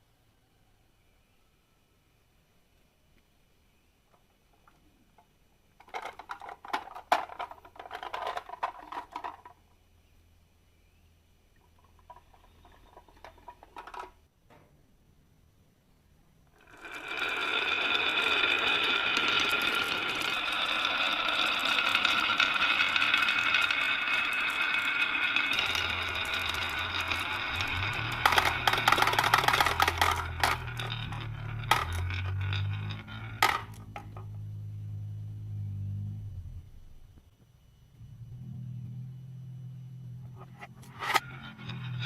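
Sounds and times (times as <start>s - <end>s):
marbles rattling down wooden track: 5.8s - 9.6s, 11.6s - 14.2s, 16.6s - 35.2s, 40.3s - 42.0s.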